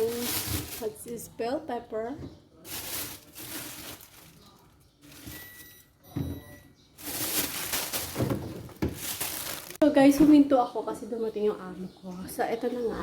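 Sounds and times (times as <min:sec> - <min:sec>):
plastic rustling and crinkling: 0:00.0 - 0:01.4, 0:02.6 - 0:05.7, 0:07.0 - 0:09.8.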